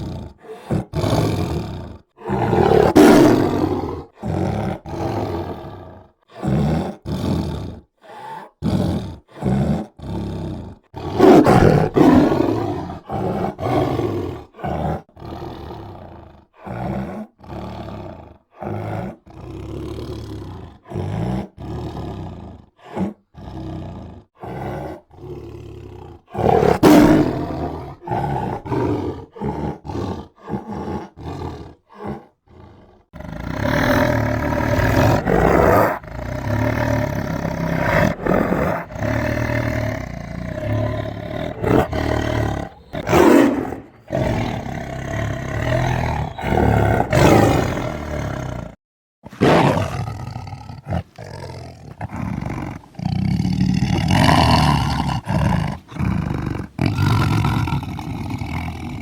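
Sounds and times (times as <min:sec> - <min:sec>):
tiger growling and roaring: 0:00.0 - 0:59.0.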